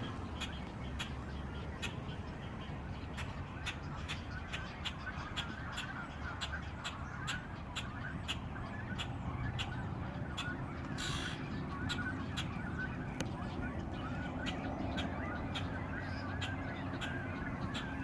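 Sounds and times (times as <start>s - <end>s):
bird chatter: 0.0s - 18.0s
sharp bird call: 11.0s - 12.0s.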